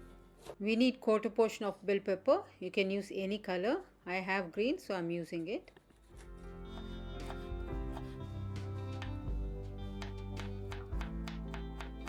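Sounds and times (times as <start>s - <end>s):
instrumental music with held notes: 6.2s - 12.0s.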